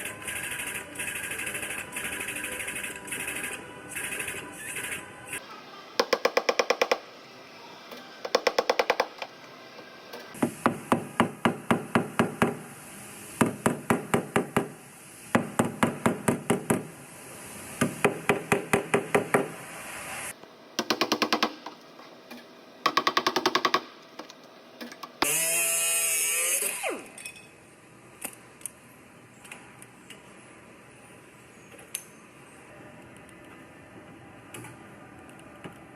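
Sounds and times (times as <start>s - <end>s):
wavering mechanical sound: 0.0s - 5.4s.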